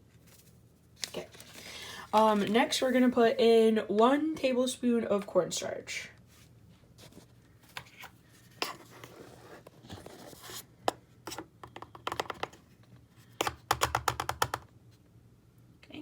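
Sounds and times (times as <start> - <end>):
rustling and scraping: 0.0 - 3.4, 6.3 - 10.7.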